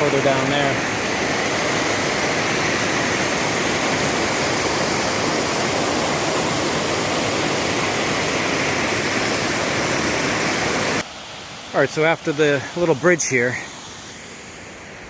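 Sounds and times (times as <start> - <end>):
stream cascading over rocks: 0.0 - 15.0.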